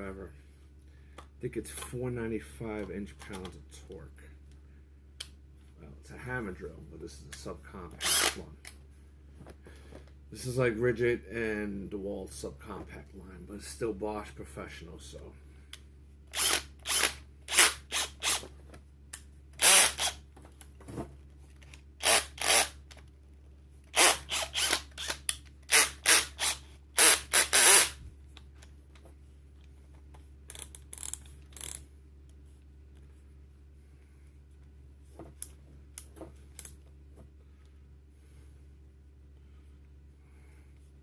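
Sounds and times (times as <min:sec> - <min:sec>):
hammer drill bursts: 0:08.0 - 0:08.4, 0:16.3 - 0:18.4, 0:19.6 - 0:20.2, 0:22.0 - 0:22.8, 0:23.9 - 0:28.0.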